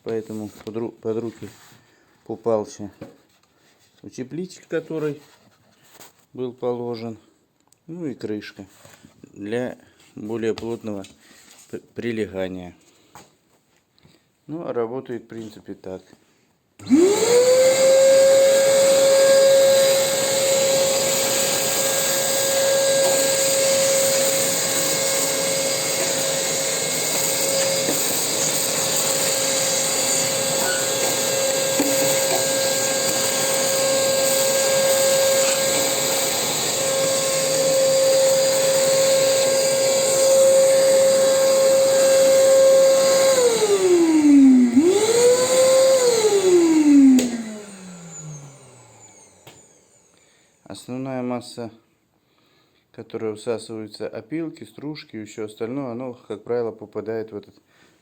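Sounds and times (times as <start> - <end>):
vacuum cleaner motor whine: 16.8 - 50.5.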